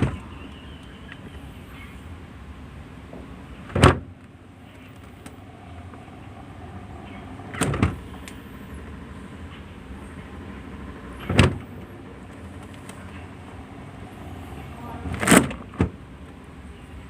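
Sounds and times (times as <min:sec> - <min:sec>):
low background noise: 0:00.0 - 0:17.0
refrigerator door opening and shutting: 0:03.6 - 0:05.4, 0:06.9 - 0:08.2, 0:11.2 - 0:11.8, 0:14.9 - 0:16.1.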